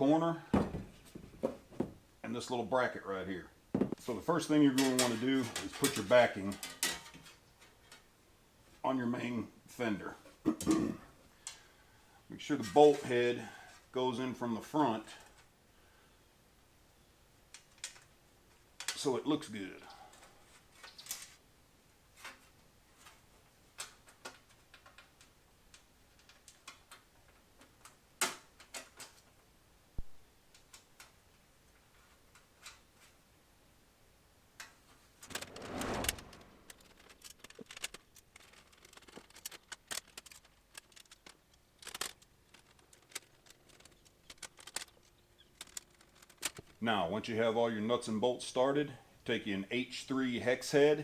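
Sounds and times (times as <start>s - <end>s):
handling noise: 0.5s - 2.1s, 3.7s - 7.8s, 34.9s - 46.8s
metallic clicks of bolts and nuts: 4.7s - 8.0s, 36.8s - 46.7s.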